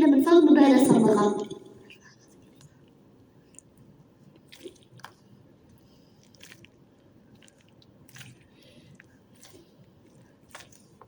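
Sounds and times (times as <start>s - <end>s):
squishy toy crackling and squelching: 6.2s - 11.0s.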